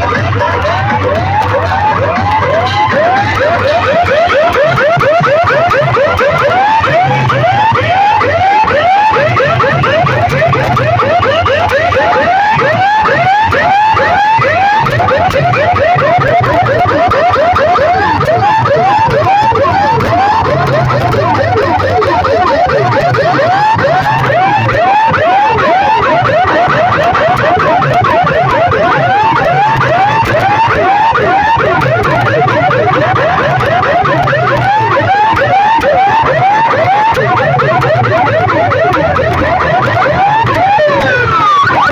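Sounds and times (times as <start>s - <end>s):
pulsing bass: 0.0s - 41.9s
siren-like electronic chirps: 0.0s - 41.9s.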